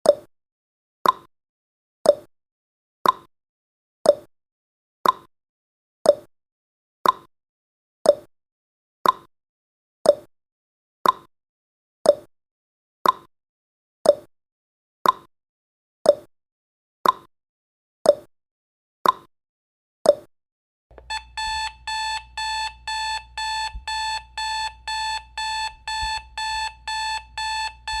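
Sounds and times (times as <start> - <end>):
timer ticking: 20.9 - 28.0
alarm clock beeping: 21.0 - 28.0.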